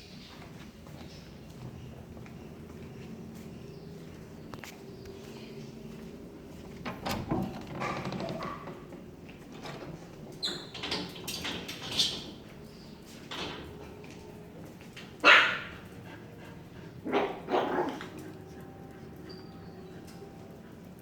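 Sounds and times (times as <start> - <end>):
dog barking: 15.2 - 15.8, 17.1 - 18.1.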